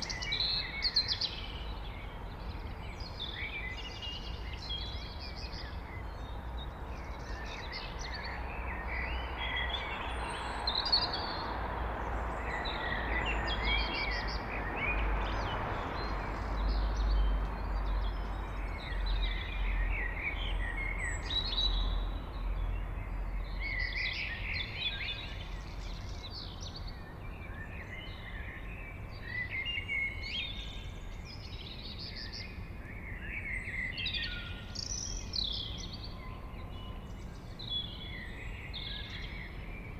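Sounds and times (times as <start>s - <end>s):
blackbird singing: 23.2s - 39.9s.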